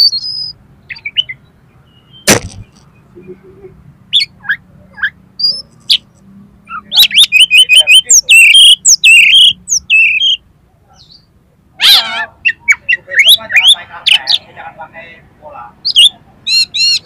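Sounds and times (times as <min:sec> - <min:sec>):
magpie-robin singing whistles: 0:00.0 - 0:02.3, 0:06.7 - 0:10.4, 0:15.8 - 0:17.0
bird rattling burst: 0:02.3 - 0:02.8.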